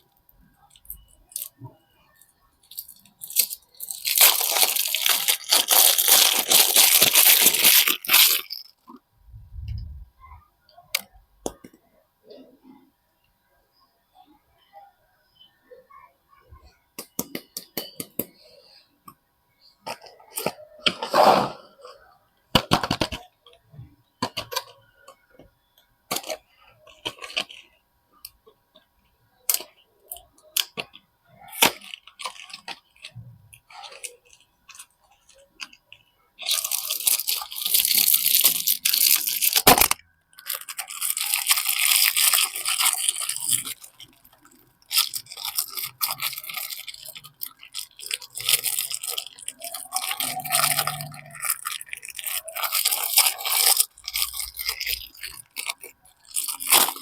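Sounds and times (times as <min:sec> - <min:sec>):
wrapper crinkling and tearing: 0:00.6 - 0:08.8, 0:26.1 - 0:27.6, 0:29.5 - 0:35.8, 0:36.4 - 0:57.0
packaging clicks: 0:02.7 - 0:08.6, 0:36.4 - 0:57.0.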